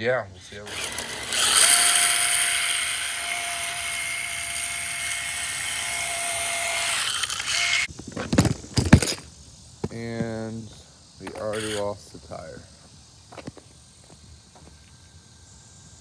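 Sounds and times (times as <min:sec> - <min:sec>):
plastic wheels hissing on ground: 0:00.0 - 0:16.0
electric motor whining: 0:00.4 - 0:09.2, 0:11.2 - 0:12.0.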